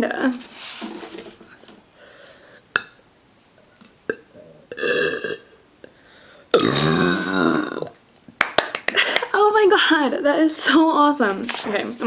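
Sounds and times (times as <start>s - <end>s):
woman burping: 2.7s - 3.0s, 4.1s - 5.6s, 6.5s - 8.0s.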